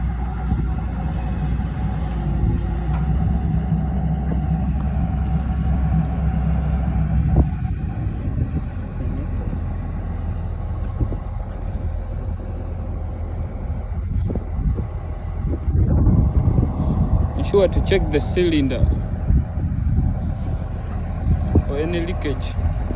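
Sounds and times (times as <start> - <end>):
excavator diesel engine rumbling: 0.0 - 22.9.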